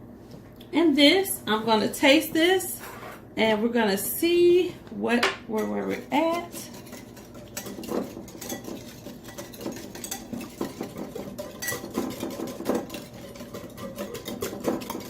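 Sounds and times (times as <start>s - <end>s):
utensil clinking against a bowl: 5.2s - 15.0s.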